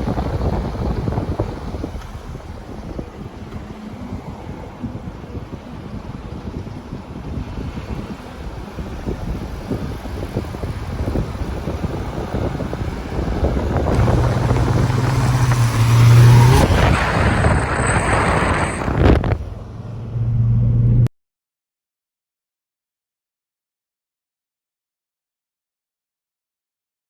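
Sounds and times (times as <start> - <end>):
wind buffeting microphone: 0.0 - 20.8
car engine revving: 0.0 - 21.1.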